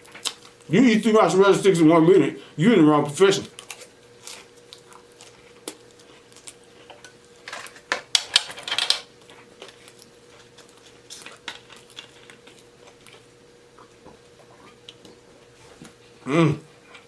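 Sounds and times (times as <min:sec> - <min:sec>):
crunching food: 0:00.0 - 0:00.8, 0:03.4 - 0:15.2.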